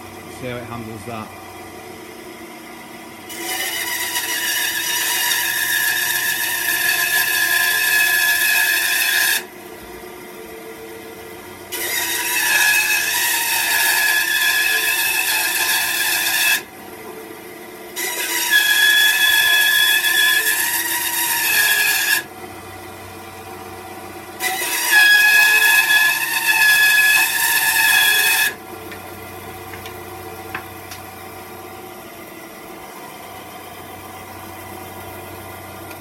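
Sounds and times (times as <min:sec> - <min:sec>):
bandsaw running freely: 0:03.2 - 0:31.8
bandsaw cutting wood: 0:03.3 - 0:09.5, 0:11.7 - 0:17.2, 0:17.9 - 0:22.8, 0:24.2 - 0:29.2.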